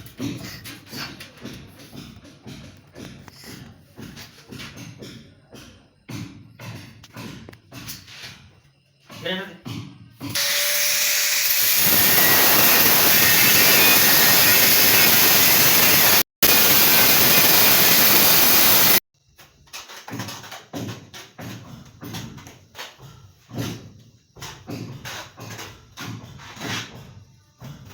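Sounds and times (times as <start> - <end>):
power tool running: 10.3 - 19.0.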